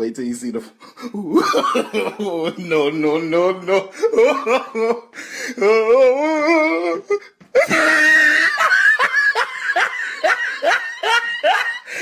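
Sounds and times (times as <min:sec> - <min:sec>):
loud laughter bursts: 0:07.6 - 0:12.0.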